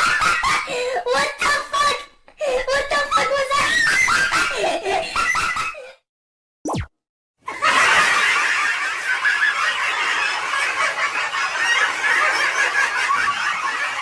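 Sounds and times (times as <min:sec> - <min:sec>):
crowd squealing and laughing: 0:07.5 - 0:14.0.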